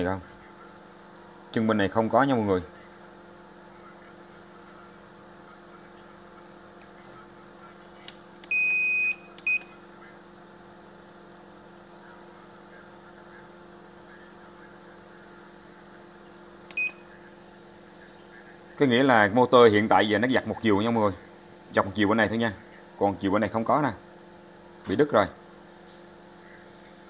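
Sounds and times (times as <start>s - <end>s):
electrical hum: 0.0s - 27.0s
washing machine beeps: 8.4s - 9.8s, 16.7s - 17.1s.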